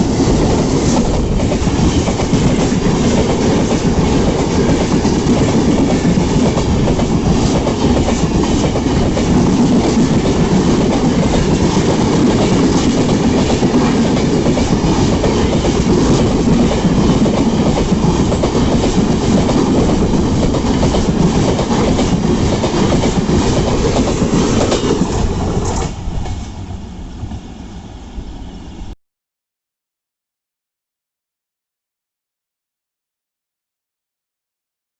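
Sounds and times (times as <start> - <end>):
train wheels clattering over rail joints: 0.3 - 26.8.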